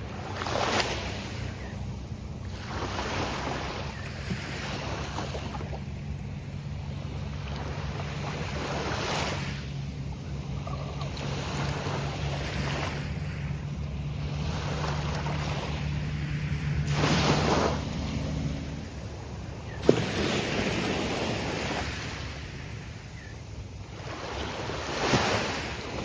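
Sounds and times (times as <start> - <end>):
surf breaking on beach: 14.4 - 23.0.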